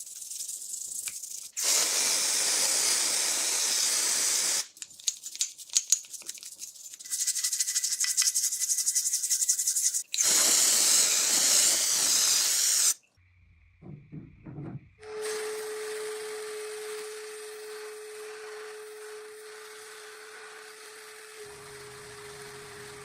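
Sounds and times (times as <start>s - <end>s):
hissing spray: 0.0s - 4.8s, 7.1s - 13.0s.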